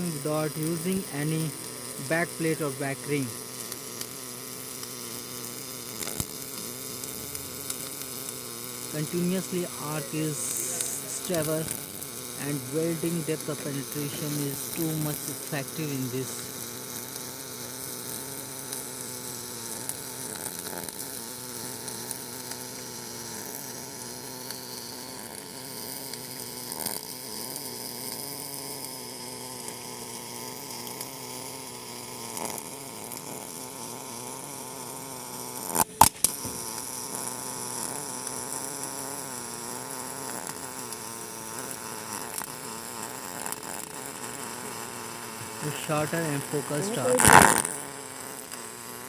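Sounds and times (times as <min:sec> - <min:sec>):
welding arc buzzing: 0:00.0 - 0:49.0.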